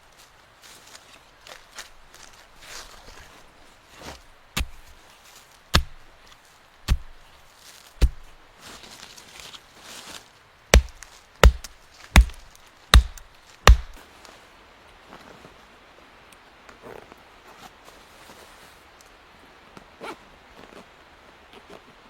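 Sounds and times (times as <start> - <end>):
wood being chopped: 4.0 - 5.0, 5.7 - 8.4, 10.7 - 14.0.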